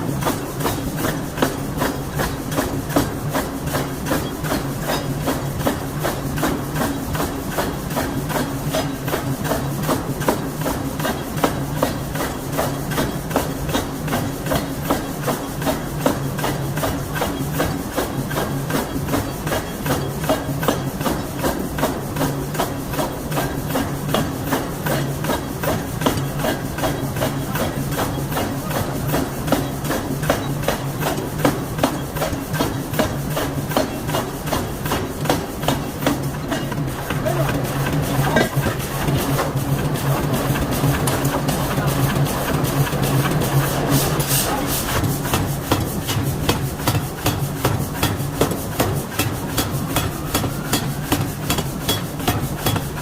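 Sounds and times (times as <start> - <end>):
power hammer striking hot steel: 44.0 - 53.0.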